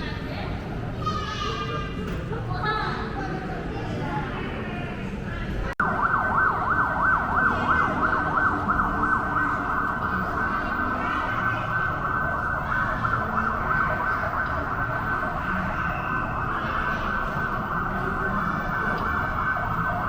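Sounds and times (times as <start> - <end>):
ambulance siren yelping: 5.8 - 20.0.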